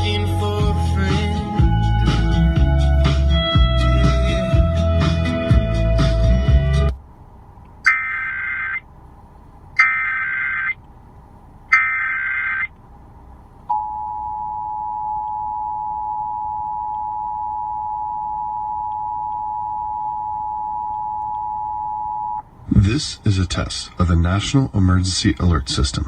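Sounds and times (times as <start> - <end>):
warbling digital data bursts: 7.9 - 8.8, 9.8 - 10.8, 11.7 - 12.7.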